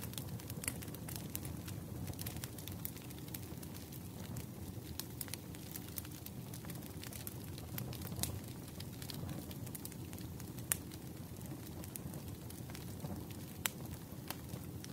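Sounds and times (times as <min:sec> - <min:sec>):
wood fire crackling: 0:00.0 - 0:14.9.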